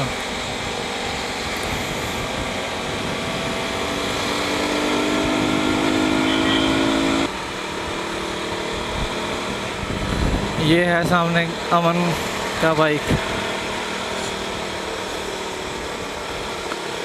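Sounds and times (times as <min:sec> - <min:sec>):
wind rush: 0:00.0 - 0:05.8, 0:08.8 - 0:11.2, 0:12.2 - 0:13.8
motorcycle engine accelerating: 0:00.0 - 0:17.0.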